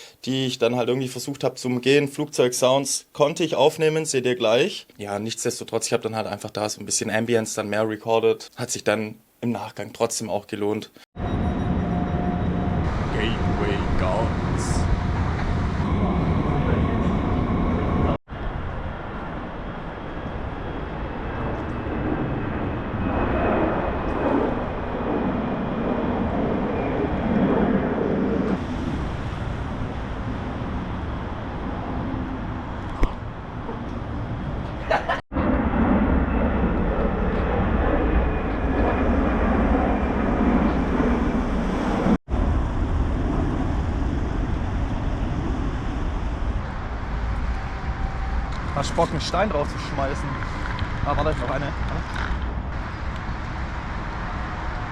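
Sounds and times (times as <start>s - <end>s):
jet airliners flying overhead: 11.2s - 54.9s.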